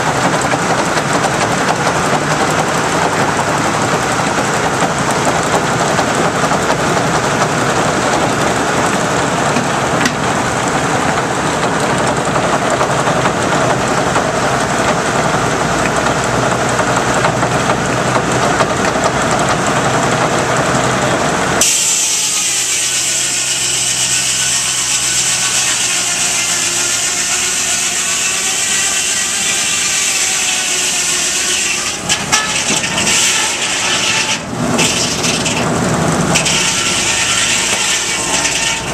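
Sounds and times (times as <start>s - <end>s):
sawmill saw cutting wood: 0.0s - 38.9s.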